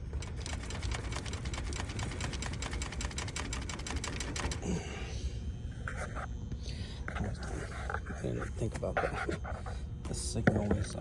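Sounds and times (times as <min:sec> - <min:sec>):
contactor rapid ticking: 0:00.0 - 0:04.7
air conditioner unit humming: 0:00.0 - 0:11.0.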